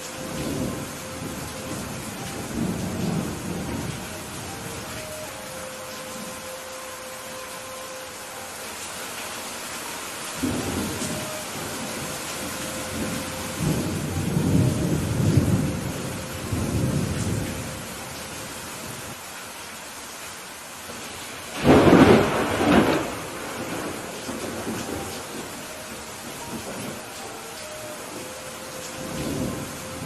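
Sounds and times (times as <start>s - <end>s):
steady rain: 0.0s - 30.0s
low rolling thunder: 0.1s - 5.5s, 10.4s - 18.2s, 21.5s - 27.2s, 28.1s - 30.0s
sharp thunderclap: 21.6s - 25.0s.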